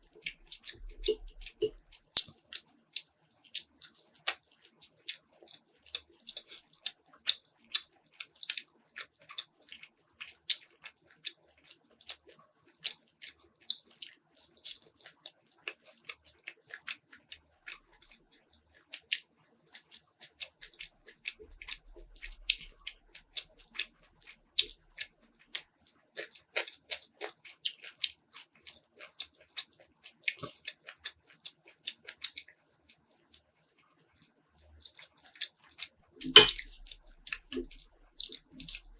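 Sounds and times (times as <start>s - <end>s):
chewing crunchy food: 0.0s - 38.9s.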